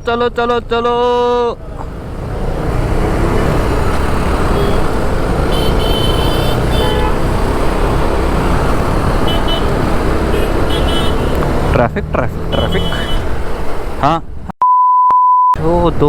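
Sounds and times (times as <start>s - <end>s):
motorcycle engine rumble: 1.4s - 14.5s
vehicle horns tooting: 3.2s - 11.6s, 12.4s - 13.4s.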